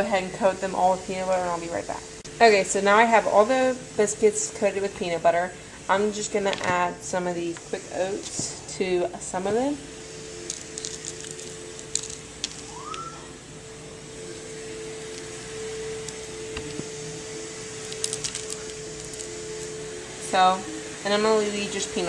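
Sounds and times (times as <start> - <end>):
steady hum: 0.0 - 22.0
oats clicking and crackling: 10.4 - 13.3, 14.3 - 17.0, 17.7 - 19.8.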